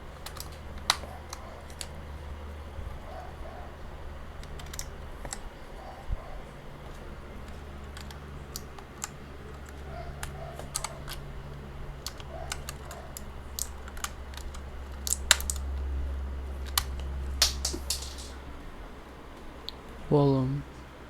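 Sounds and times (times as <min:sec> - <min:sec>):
low hum: 0:00.0 - 0:21.0
keycaps clicking onto keyboard: 0:00.1 - 0:02.0, 0:04.3 - 0:05.5, 0:06.9 - 0:15.9, 0:16.6 - 0:18.4.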